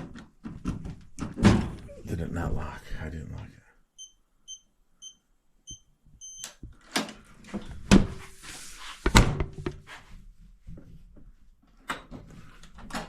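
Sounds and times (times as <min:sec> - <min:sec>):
keypad lock beeps: 0:04.0 - 0:06.6.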